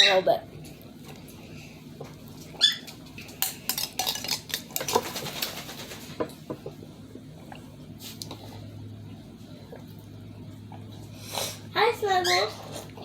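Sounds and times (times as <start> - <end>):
spoons clinking on bowls: 3.4 - 4.9.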